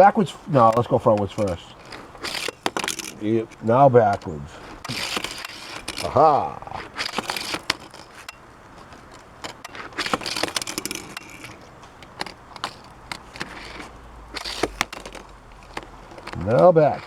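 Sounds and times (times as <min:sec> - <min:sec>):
toy cars rolling on a track: 0:00.0 - 0:17.0.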